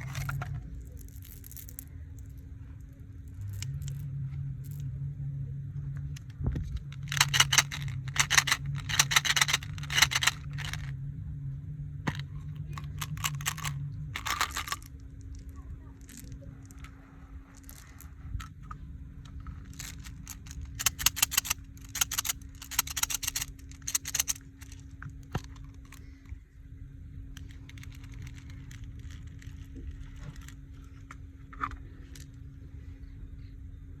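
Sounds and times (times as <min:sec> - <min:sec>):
steady low hum: 0:00.0 - 0:34.0
sharp clicks and rattles: 0:06.2 - 0:10.9, 0:12.1 - 0:15.5, 0:19.6 - 0:26.0, 0:27.4 - 0:30.6.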